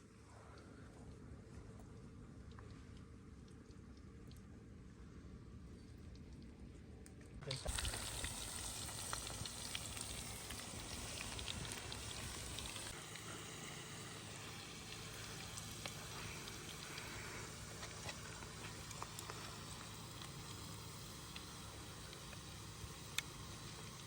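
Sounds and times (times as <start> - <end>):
food sizzling in a frying pan: 7.6 - 24.0
fire crackles and pops: 7.7 - 24.0.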